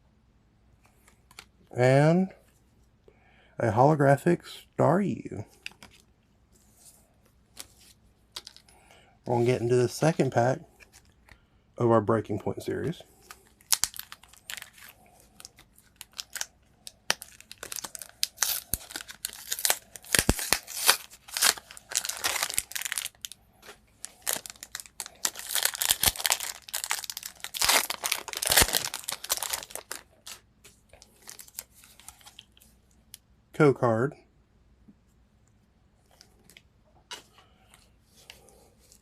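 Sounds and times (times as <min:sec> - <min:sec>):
foil wrapper tearing and crinkling: 0:13.4 - 0:23.4, 0:24.0 - 0:30.4, 0:31.2 - 0:32.4.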